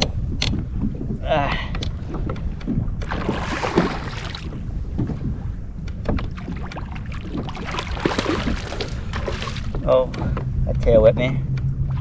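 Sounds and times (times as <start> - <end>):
wind noise on microphone: 0.0 - 12.0
fish thrashing and splashing: 3.0 - 4.6, 6.3 - 9.9.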